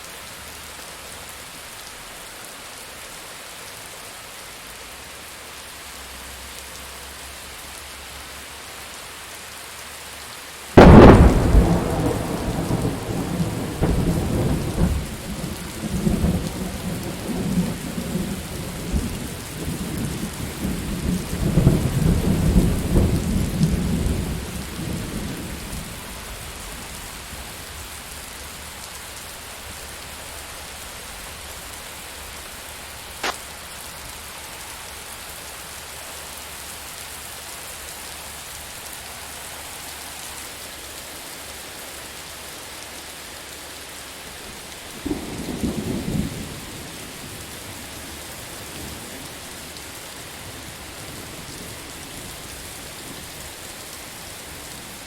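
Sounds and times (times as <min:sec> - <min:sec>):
steady rain: 0:00.0 - 0:55.0
thunder rumbling: 0:10.8 - 0:27.0, 0:45.0 - 0:47.5.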